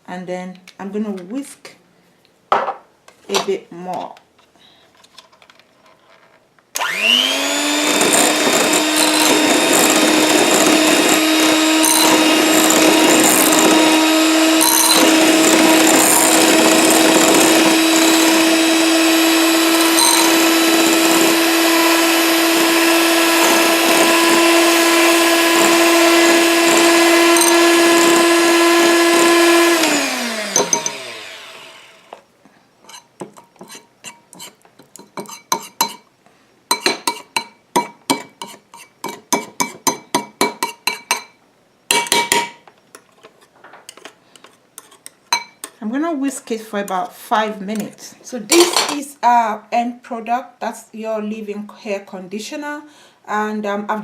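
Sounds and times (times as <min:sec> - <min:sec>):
electric hand whisk whining: 0:06.8 - 0:32.2.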